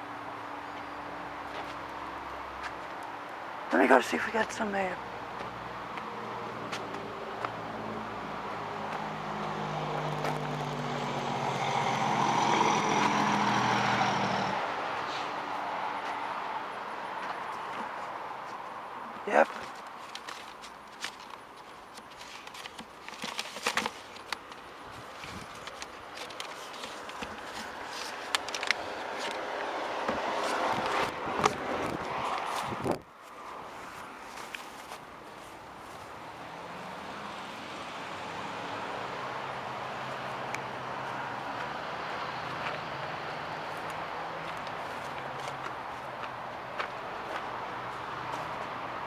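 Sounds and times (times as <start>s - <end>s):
vehicle engine approaching: 5.1s - 16.9s, 35.6s - 49.0s.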